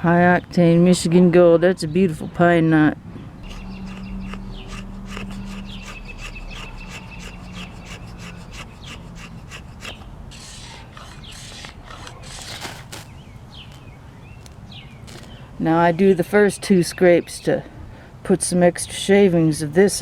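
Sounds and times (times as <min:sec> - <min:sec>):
blade scraping wood shavings: 0:03.4 - 0:15.5.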